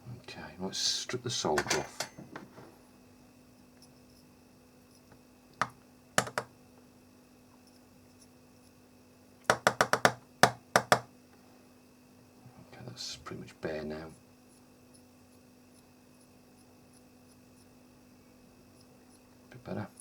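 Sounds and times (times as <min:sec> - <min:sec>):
faint steady hum: 0:00.0 - 0:20.0
hand tools clicking and tapping: 0:01.6 - 0:02.5, 0:05.6 - 0:06.5, 0:09.5 - 0:11.1.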